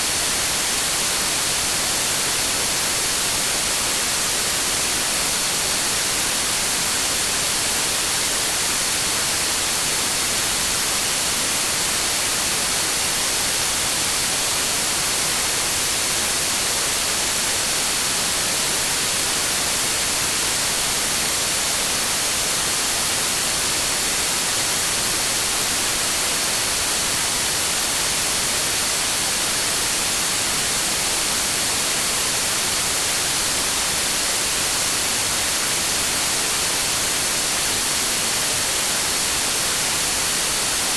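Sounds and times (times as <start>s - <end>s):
steady green noise hiss: 0.0s - 40.9s.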